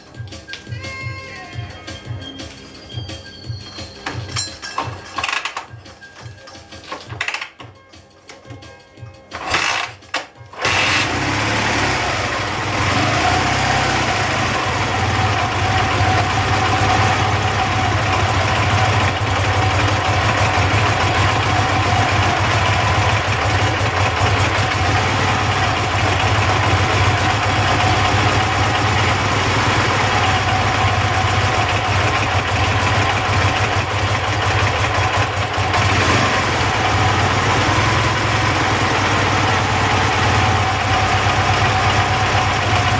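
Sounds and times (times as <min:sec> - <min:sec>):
motorcycle engine idling: 0:10.6 - 0:42.9.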